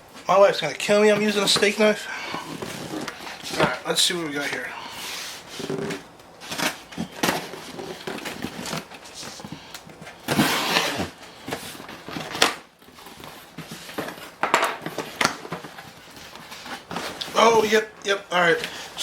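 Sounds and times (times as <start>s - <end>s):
packaging rustling and scraping: 1.0s - 18.9s
items knocking: 5.6s - 15.9s.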